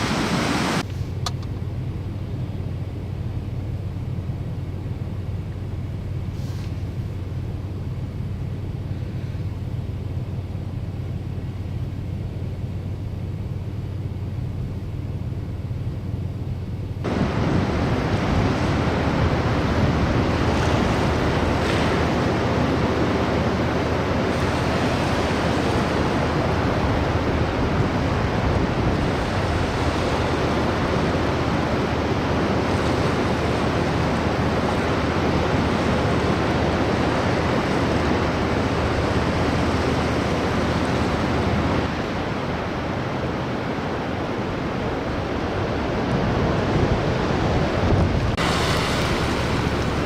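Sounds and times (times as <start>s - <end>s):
rough surf: 0.0s - 1.5s, 17.0s - 50.0s
low engine hum: 0.0s - 50.0s
strong wind: 0.0s - 50.0s.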